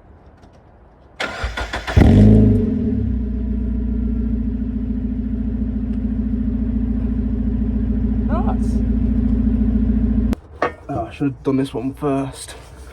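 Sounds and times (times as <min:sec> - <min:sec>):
starter motor cranking: 0:01.2 - 0:02.4
car engine starting and idling: 0:01.2 - 0:10.4.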